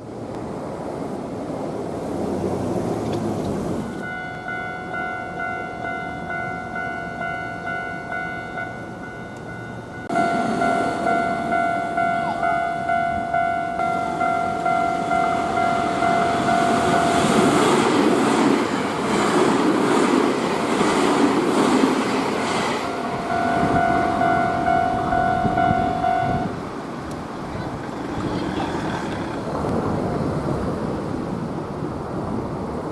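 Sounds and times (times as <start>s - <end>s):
electric train passing: 0.0s - 32.9s
level crossing bell ringing: 3.9s - 17.5s, 22.4s - 26.6s
wheels clacking over rail joints: 13.8s - 29.9s.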